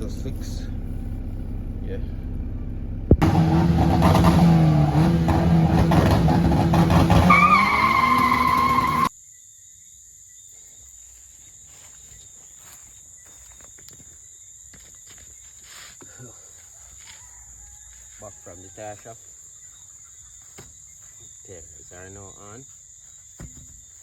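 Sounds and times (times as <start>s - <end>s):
car engine running hard: 0.0s - 9.1s
tyre squeal: 6.0s - 9.1s
insect buzz: 9.1s - 18.0s, 19.2s - 24.0s.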